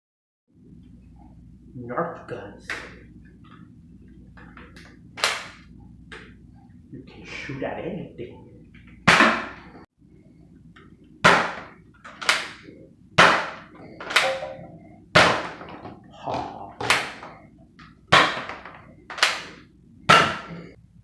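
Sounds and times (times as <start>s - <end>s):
toy blaster shots snapping: 5.2s - 5.6s, 12.1s - 12.6s.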